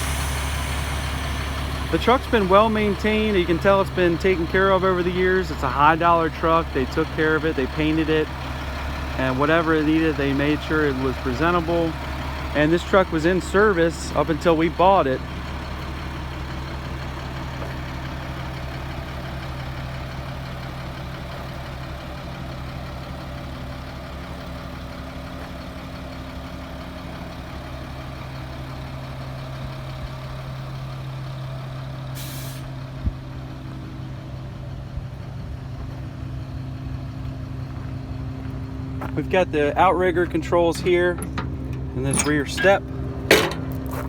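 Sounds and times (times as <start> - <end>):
short hiss of air: 0.0 - 1.9, 32.2 - 32.7
diesel truck engine idling: 0.0 - 44.0.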